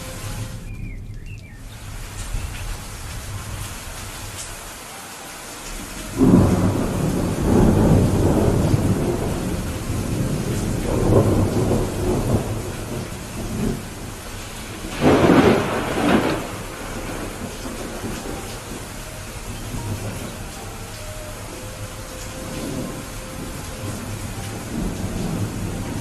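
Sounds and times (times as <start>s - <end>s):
steady rain: 0.0s - 26.0s
thunder rumbling: 5.7s - 26.0s.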